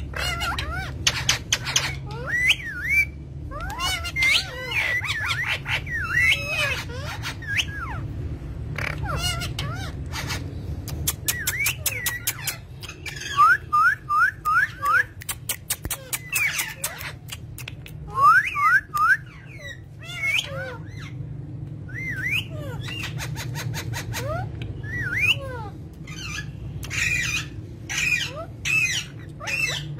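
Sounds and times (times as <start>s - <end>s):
parrot whistling chirps: 0.1s - 8.1s, 11.1s - 17.4s, 18.1s - 21.2s, 21.9s - 29.9s
sharp clicks: 14.8s - 18.0s.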